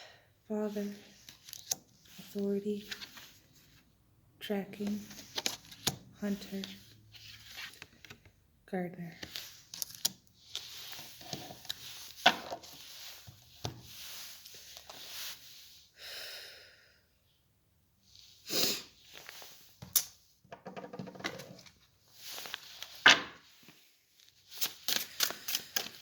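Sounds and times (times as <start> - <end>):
cards rustling and sliding: 0.9 - 3.8, 4.8 - 8.3, 9.2 - 15.5, 21.6 - 23.8, 24.5 - 26.0.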